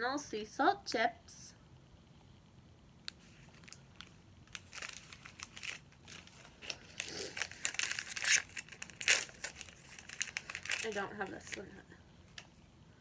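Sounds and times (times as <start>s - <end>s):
plastic packaging crinkling: 3.1s - 12.4s.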